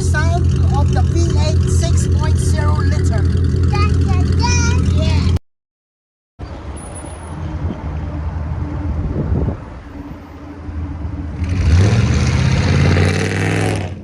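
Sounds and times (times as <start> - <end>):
unmuffled engine revving: 0.0 - 5.4, 10.7 - 14.0.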